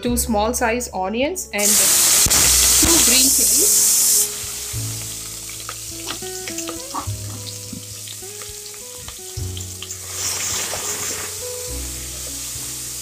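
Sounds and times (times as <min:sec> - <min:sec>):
soft background music: 0:00.0 - 0:13.0
onions sizzling in hot oil: 0:01.6 - 0:13.0
crackles and clicks from stirring: 0:05.5 - 0:11.3.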